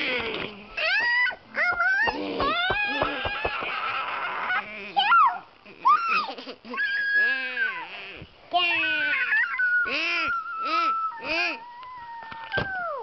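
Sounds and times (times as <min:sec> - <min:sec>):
girls squealing and whooping: 0:09.1 - 0:13.0.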